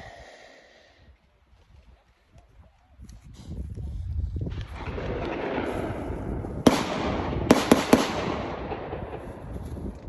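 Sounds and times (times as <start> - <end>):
gunshots with rolling echo: 4.5 - 10.0.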